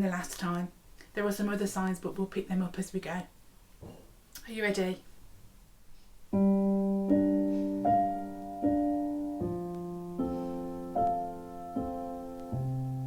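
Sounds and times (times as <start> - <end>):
piano chords: 6.3 - 13.0.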